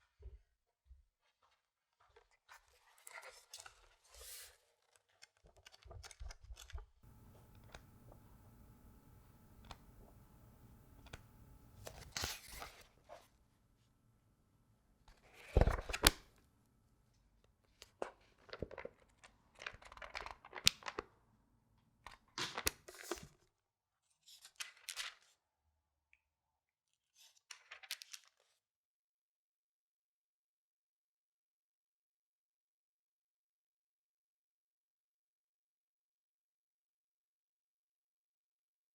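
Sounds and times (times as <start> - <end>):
book pages turning: 7.0 - 12.8.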